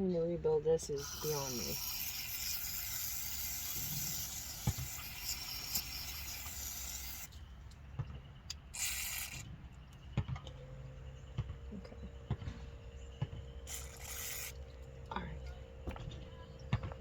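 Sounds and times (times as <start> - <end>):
aerosol spray can hissing: 1.0 - 7.3, 8.8 - 9.5, 13.7 - 14.6.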